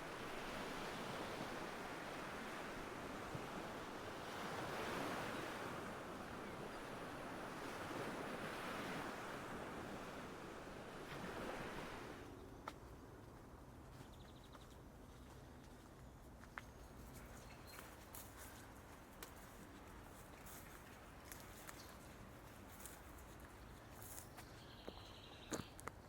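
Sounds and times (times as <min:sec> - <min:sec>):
surf washing ashore: 0:00.0 - 0:12.3.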